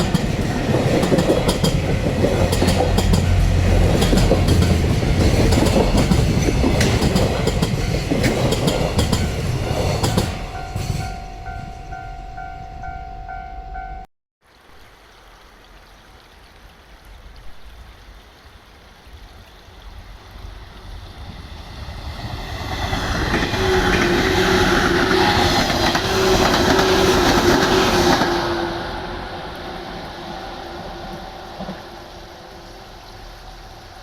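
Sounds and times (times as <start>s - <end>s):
train clattering on rails: 0.0s - 12.6s, 22.0s - 29.0s.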